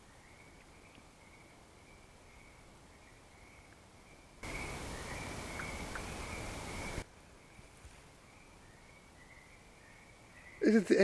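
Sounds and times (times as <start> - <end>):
night insects trilling: 4.4 - 7.0.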